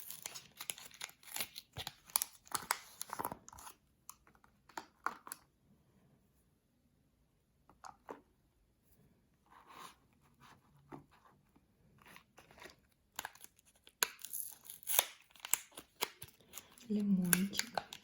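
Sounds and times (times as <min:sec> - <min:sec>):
wrapping crinkling and tearing: 0:00.0 - 0:03.8, 0:12.2 - 0:18.0.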